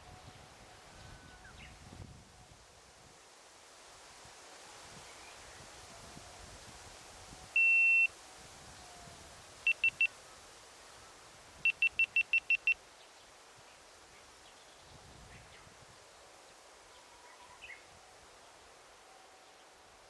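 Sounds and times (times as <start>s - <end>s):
faint forest ambience: 0.0s - 20.0s
high-pitched electronic beeps: 9.7s - 10.1s, 11.6s - 12.8s.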